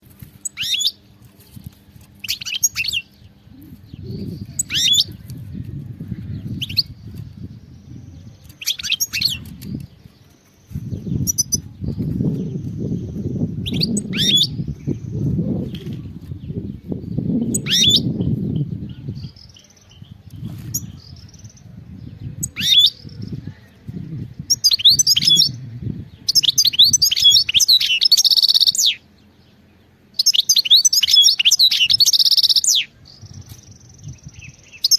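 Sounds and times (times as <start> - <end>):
finch chirps and twittering song: 0.1 - 34.9
low rumble: 3.2 - 8.6, 9.3 - 26.4.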